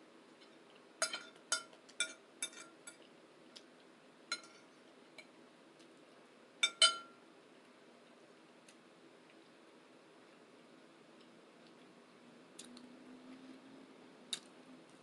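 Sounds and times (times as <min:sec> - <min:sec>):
utensil clinking against a dish: 0:01.0 - 0:03.1, 0:04.3 - 0:05.3, 0:06.6 - 0:07.1.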